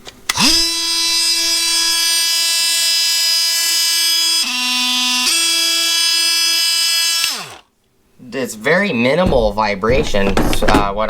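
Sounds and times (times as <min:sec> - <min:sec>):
oscillating multi-tool motor whine: 0:00.3 - 0:07.7.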